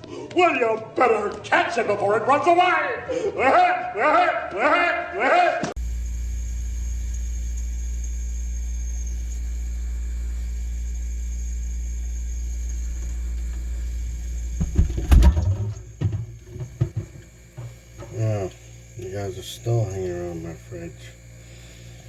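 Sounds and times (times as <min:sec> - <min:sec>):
faint high steady tones: 0:05.8 - 0:22.0
refrigerator humming: 0:05.8 - 0:22.0
knocks and clatter: 0:12.9 - 0:18.2.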